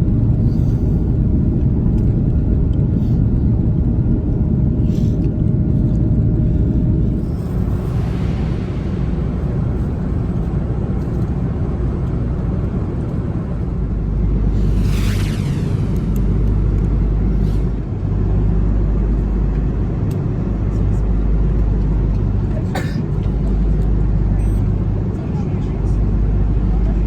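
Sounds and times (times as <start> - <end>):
airplane cabin engine rumble: 0.0 - 27.0
falling whine: 6.1 - 22.5.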